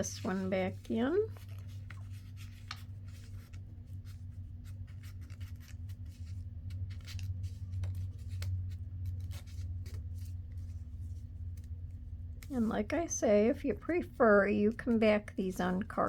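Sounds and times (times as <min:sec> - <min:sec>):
paper rustling and sliding: 0:00.0 - 0:11.7
steady low hum: 0:00.0 - 0:16.0.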